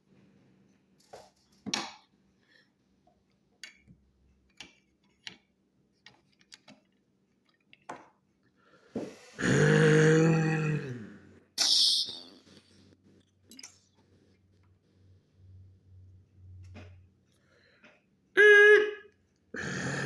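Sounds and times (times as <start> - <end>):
low grunt or burp: 9.4 - 11.4, 19.6 - 20.0.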